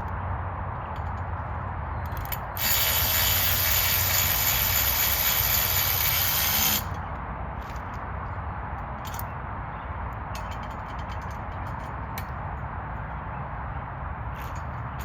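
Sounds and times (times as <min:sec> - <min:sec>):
ratchet wrench clicking: 0:02.1 - 0:07.0.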